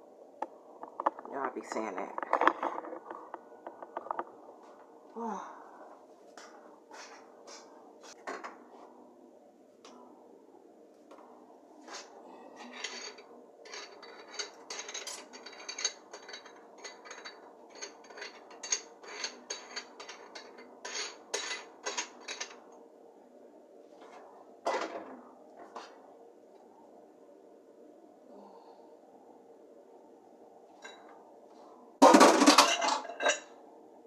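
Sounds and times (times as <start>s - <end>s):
dishes and utensils clinking: 12.6s - 22.6s, 32.0s - 33.5s
kitchenware clatter: 12.6s - 22.6s, 32.0s - 33.5s.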